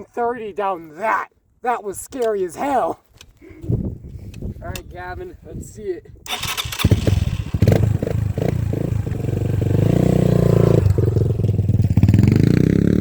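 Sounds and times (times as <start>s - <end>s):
dirt bike engine revving: 6.3s - 13.0s.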